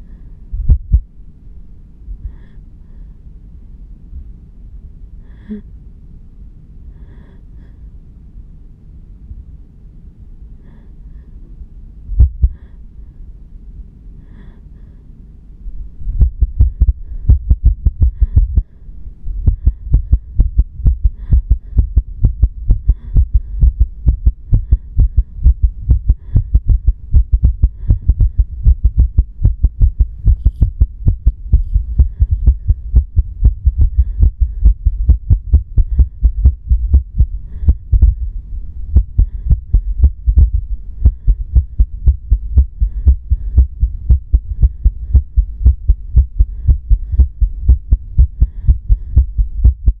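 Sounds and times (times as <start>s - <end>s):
fast heartbeat: 0.5s - 1.2s, 12.1s - 12.7s, 16.0s - 50.0s.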